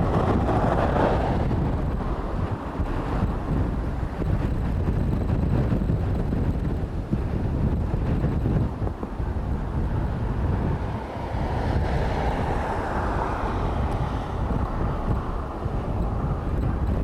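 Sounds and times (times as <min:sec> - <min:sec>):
jet airliner engines passing: 0:00.0 - 0:17.0
wind buffeting microphone: 0:00.0 - 0:17.0.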